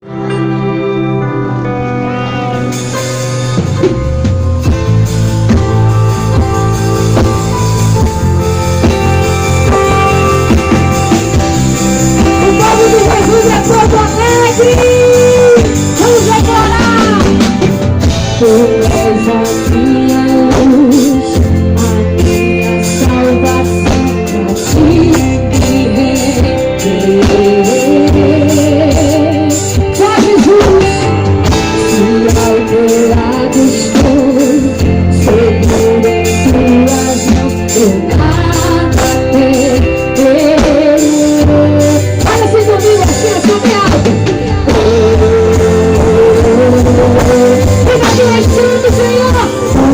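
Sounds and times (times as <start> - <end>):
gospel band playing: 0.0 - 49.9
person singing melody: 4.7 - 49.9.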